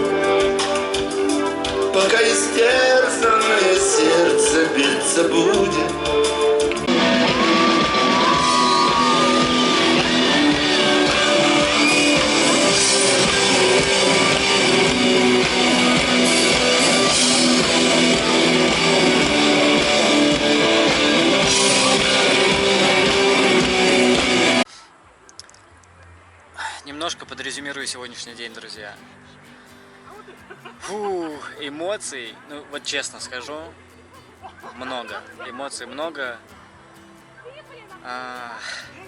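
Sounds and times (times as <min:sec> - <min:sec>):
electric guitar chords: 0:00.0 - 0:24.6
live rock band playing: 0:00.0 - 0:24.6
person singing: 0:01.3 - 0:23.5.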